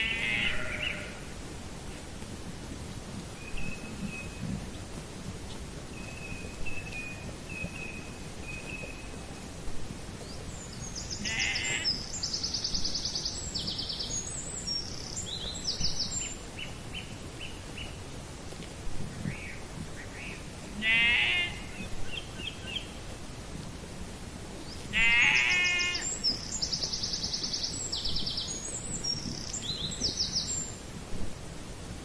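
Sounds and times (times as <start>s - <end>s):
sheep bleating: 0.0s - 1.2s, 11.2s - 11.9s, 20.8s - 21.7s, 24.9s - 26.0s
small birds calling: 0.0s - 1.2s, 10.2s - 18.0s, 19.2s - 23.0s, 24.6s - 30.7s.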